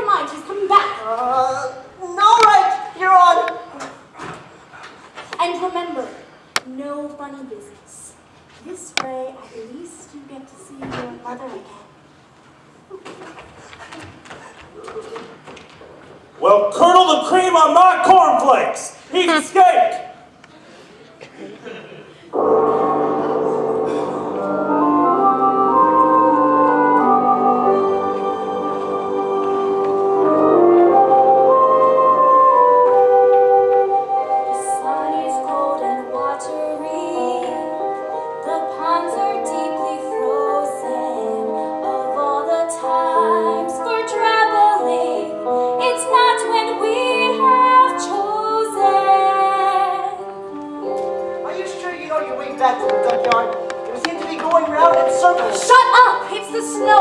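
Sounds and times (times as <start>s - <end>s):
instrumental accompaniment: 22.3s - 57.0s
organ-like keyboard chords: 22.3s - 57.0s
woman singing: 34.3s - 50.9s, 55.2s - 57.0s.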